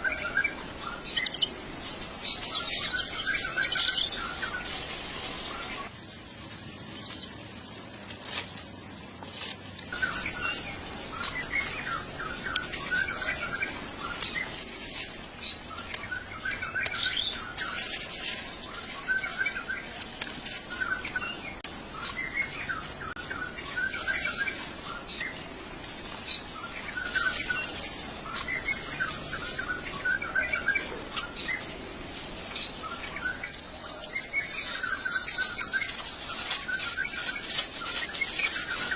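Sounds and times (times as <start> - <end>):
birds chirping: 0.0 - 38.9
small clicks and rustles: 33.4 - 38.9.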